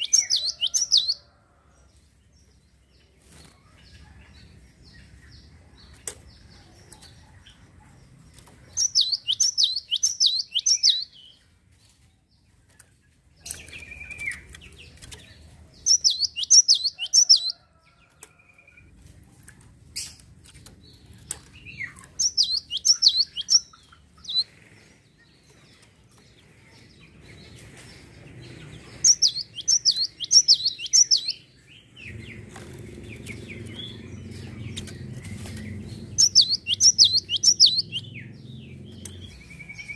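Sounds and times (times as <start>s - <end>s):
low rumbling background noise: 17.6s - 39.9s.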